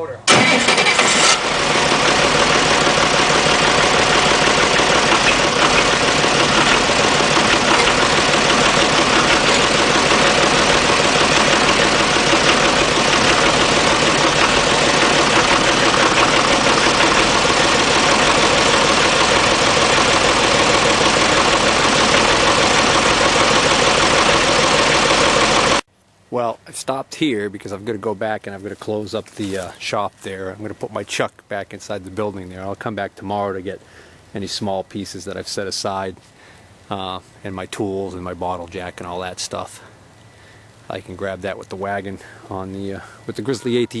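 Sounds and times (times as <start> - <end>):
engine idling: 0.3 - 25.9.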